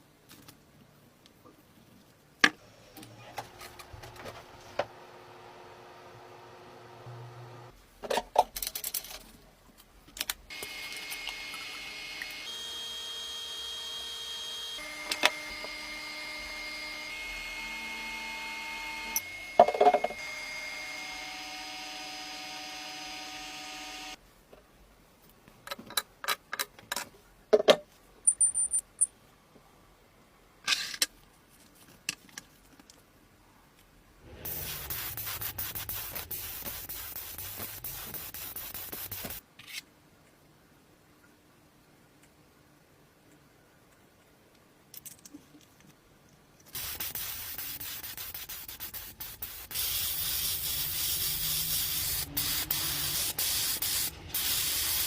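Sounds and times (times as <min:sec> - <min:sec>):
rough hiss of sanding: 0:34.4 - 0:39.4, 0:46.7 - 0:55.0.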